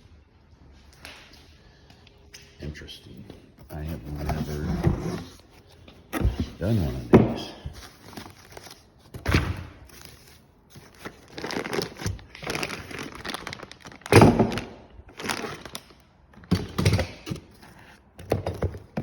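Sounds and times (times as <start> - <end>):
handling thuds and knocks: 4.1 - 9.8.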